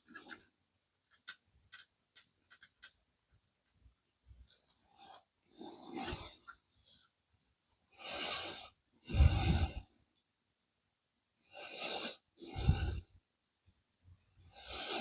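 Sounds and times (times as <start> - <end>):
person breathing into microphone: 8.1 - 9.9, 11.8 - 13.1.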